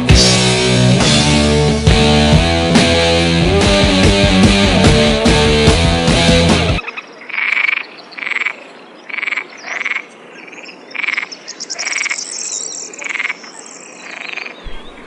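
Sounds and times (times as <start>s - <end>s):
frog croaking: 6.8s - 15.0s.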